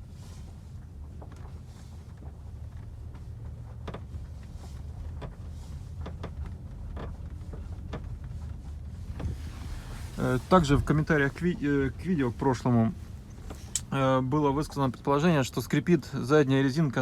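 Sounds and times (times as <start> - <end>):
car road and engine noise: 0.0 - 17.0
short creaks: 13.0 - 14.0.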